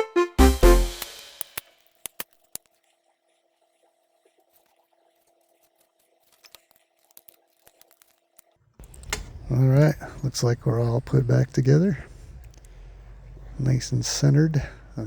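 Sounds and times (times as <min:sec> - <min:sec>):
background music: 0:00.0 - 0:01.5
folding knife clicks: 0:01.0 - 0:02.3
faint steady hum: 0:08.8 - 0:15.0.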